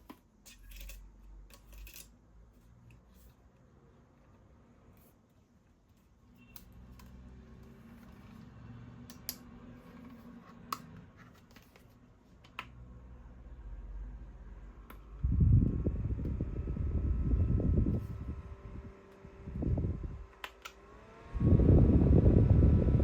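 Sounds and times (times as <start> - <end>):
fan airflow rumbling on microphone: 13.8 - 20.4, 21.2 - 23.0.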